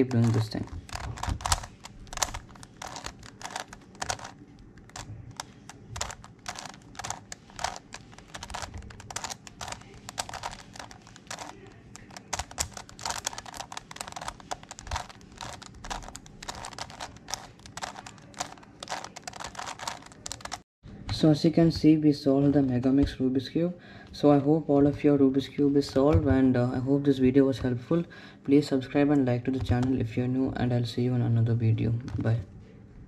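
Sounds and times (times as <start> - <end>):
plastic puzzle clicks: 0.1 - 20.6.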